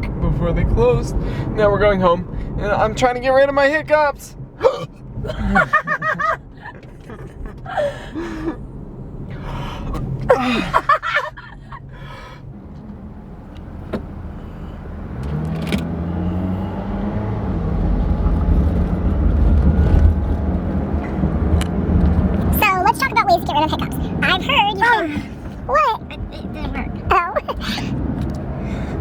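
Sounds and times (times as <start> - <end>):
car engine: 0.0 - 29.0
road noise inside car: 0.0 - 29.0
person hiccuping: 4.6 - 5.5.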